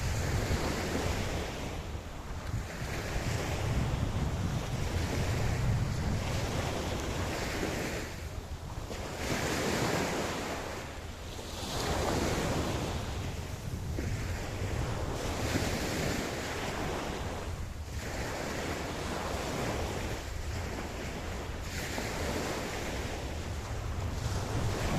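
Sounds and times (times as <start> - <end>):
ocean waves on beach: 0.0 - 24.9.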